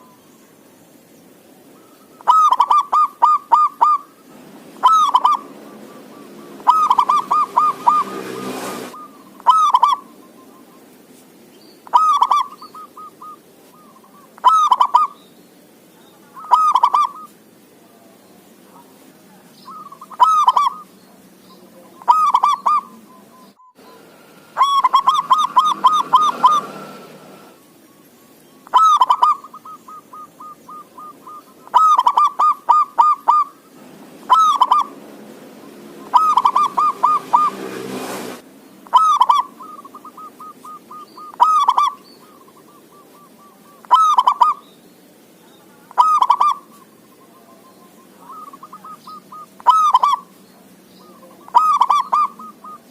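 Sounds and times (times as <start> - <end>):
dove cooing: 1.8 - 10.9, 11.8 - 15.2, 16.1 - 18.1, 18.7 - 38.2, 38.8 - 44.6, 45.6 - 52.9.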